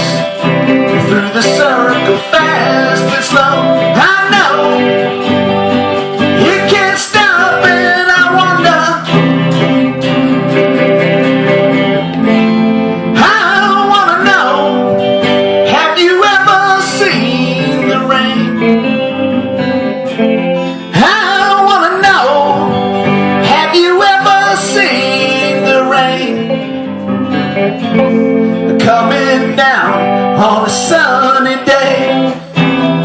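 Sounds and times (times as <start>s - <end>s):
person singing: 0.0s - 10.3s, 13.0s - 27.0s, 27.7s - 33.0s
strummed guitar chords: 0.0s - 33.0s.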